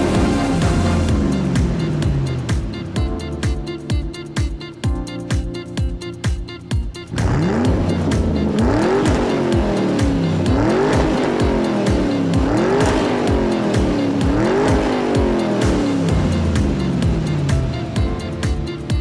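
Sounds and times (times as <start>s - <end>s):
engine revving: 0.0s - 3.0s, 7.1s - 18.0s
music: 0.0s - 19.0s.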